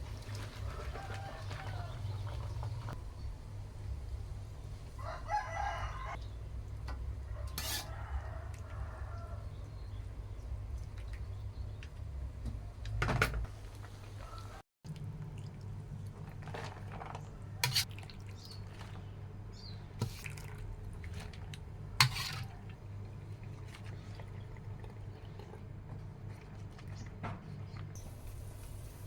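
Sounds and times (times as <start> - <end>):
liquid sounds: 14.9 - 27.2.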